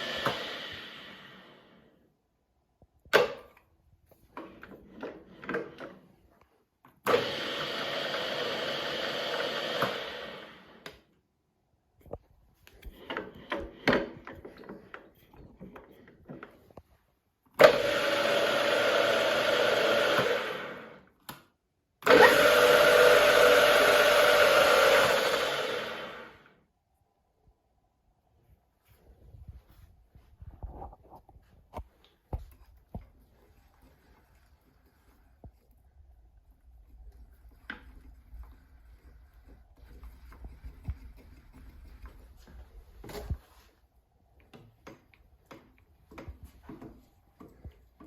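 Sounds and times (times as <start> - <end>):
geared machine headstock running: 7.1 - 10.7, 17.6 - 21.0, 22.0 - 26.5.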